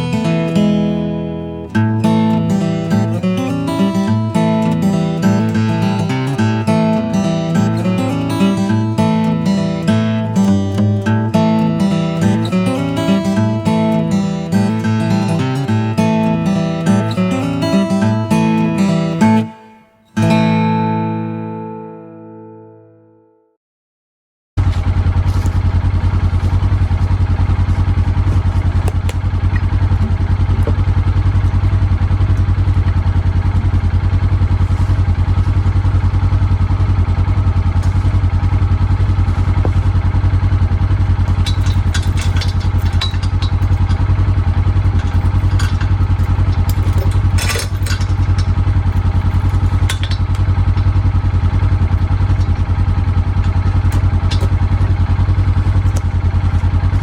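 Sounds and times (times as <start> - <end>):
small gasoline engine running: 1.8 - 19.5, 24.6 - 57.0
short clatters: 24.6 - 57.0.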